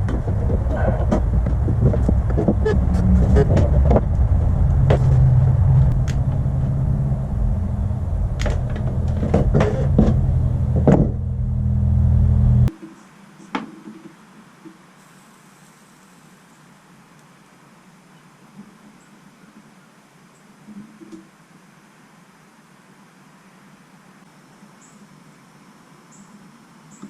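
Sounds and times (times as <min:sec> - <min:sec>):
knocks and clicks: 0:00.0 - 0:05.3, 0:08.4 - 0:11.4
loud low mechanical rumble: 0:00.0 - 0:12.7.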